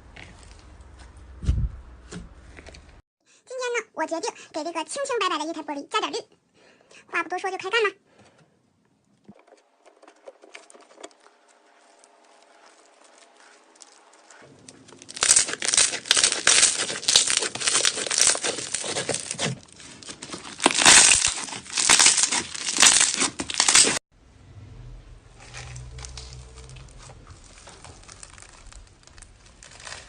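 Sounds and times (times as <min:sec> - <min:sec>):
slime crackling and crinkling: 0:10.2 - 0:24.0, 0:25.4 - 0:30.0.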